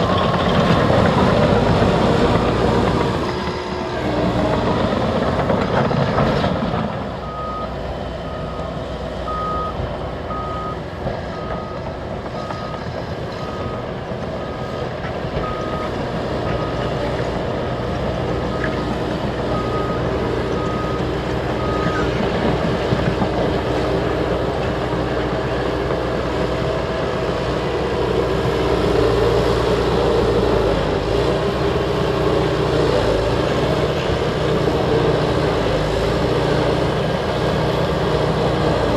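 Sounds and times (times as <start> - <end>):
reversing alarm beeping: 0.0 - 2.6, 7.2 - 14.8, 15.4 - 16.9, 19.5 - 22.2
diesel crawler dozers running: 0.0 - 38.9.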